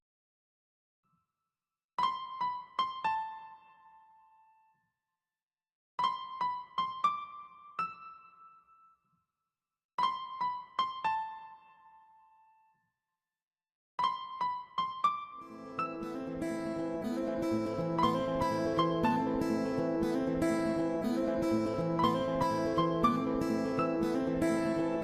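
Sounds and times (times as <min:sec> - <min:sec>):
high keyboard notes: 0:15.4 - 0:25.0.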